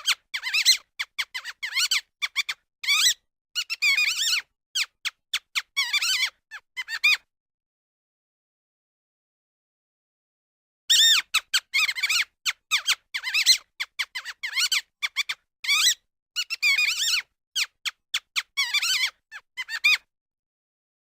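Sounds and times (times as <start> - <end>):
mouse squeaking: 0.0 - 7.3, 10.9 - 20.1.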